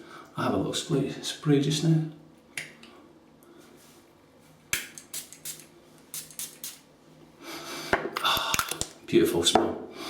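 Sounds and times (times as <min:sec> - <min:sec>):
spray bottle hissing spritzes: 0:04.8 - 0:06.9.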